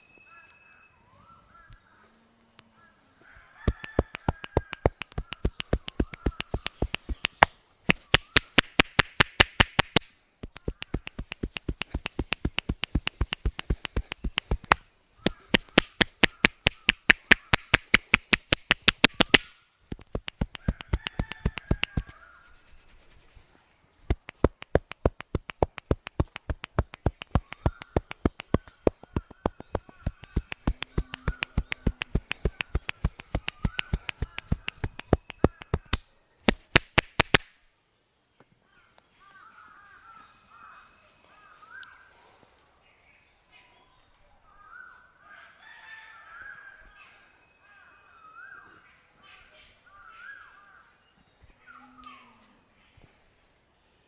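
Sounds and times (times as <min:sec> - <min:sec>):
hands slapping during massage: 0:03.6 - 0:23.2, 0:24.1 - 0:37.5.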